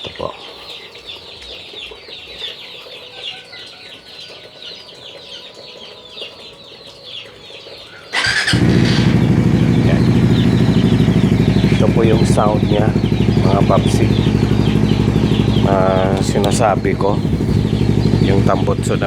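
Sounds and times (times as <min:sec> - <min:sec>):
high chirping: 0:00.0 - 0:19.0
motorcycle engine starting and idling: 0:08.1 - 0:19.0.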